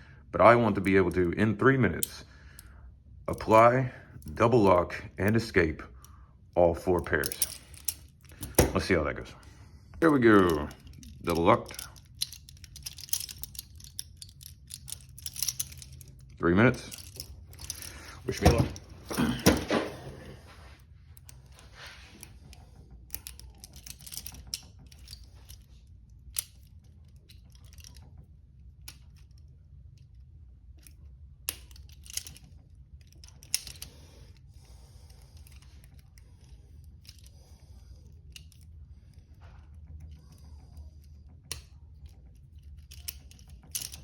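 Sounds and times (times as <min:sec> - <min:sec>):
lockpick clicking in handcuffs: 0:06.9 - 0:09.2, 0:10.0 - 0:19.6, 0:22.2 - 0:30.2, 0:30.8 - 0:44.0.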